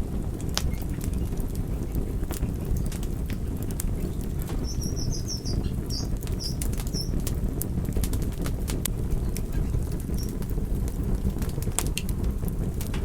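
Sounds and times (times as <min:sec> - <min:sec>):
campfire crackling and popping: 0:00.0 - 0:13.0
high-pitched chirps: 0:04.6 - 0:07.1.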